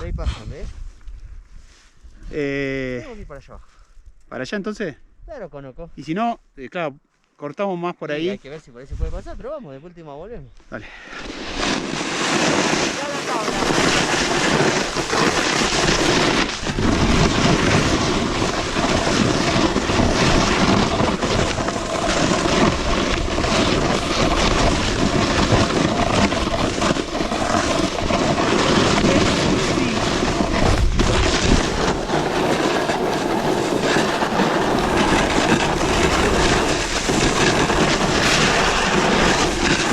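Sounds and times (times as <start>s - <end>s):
wind buffeting microphone: 0.0s - 4.2s, 11.4s - 39.9s
snowboard scraping icy snow: 11.1s - 39.9s.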